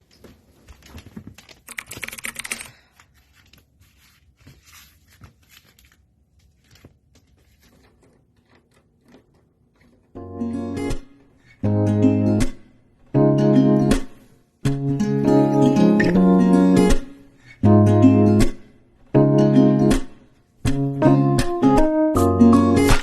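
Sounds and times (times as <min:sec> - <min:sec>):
acoustic guitar music: 0:10.1 - 0:23.0.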